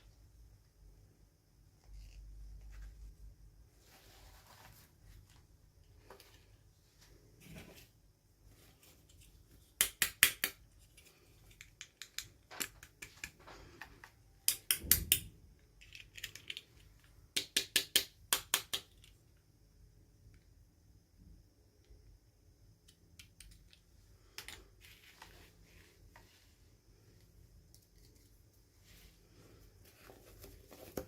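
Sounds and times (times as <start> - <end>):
rustling: 1.7 - 9.4
small hard objects clicking: 9.8 - 19.2.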